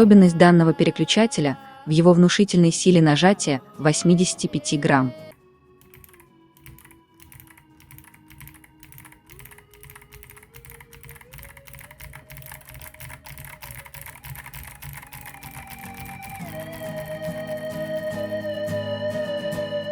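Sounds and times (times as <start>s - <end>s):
quiet background music: 0.0s - 19.9s
clicky mechanical keyboard typing: 5.8s - 18.8s.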